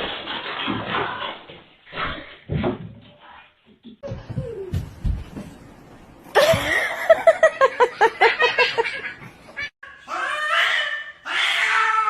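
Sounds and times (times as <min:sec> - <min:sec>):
cat caterwauling: 0:10.1 - 0:12.0.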